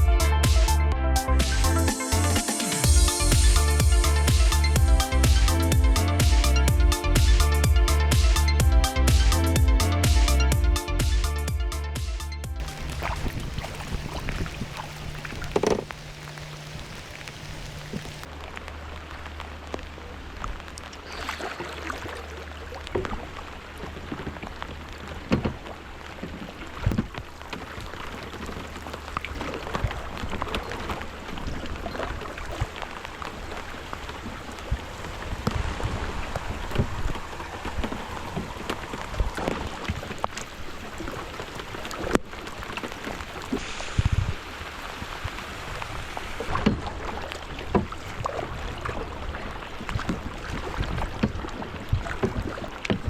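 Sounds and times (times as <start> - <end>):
close drops ticking and knocking: 12.6 - 18.3
steady low hum: 12.6 - 18.3
rain falling: 12.6 - 20.8, 31.1 - 46.5.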